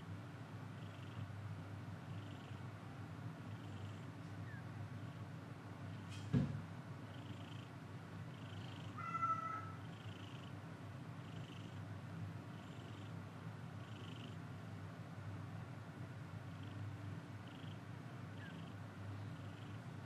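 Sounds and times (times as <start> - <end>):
cat purring: 0.6 - 6.1, 7.0 - 9.0, 9.8 - 14.6, 16.3 - 20.0
short knock: 6.2 - 6.6
kitten mew: 9.0 - 9.8.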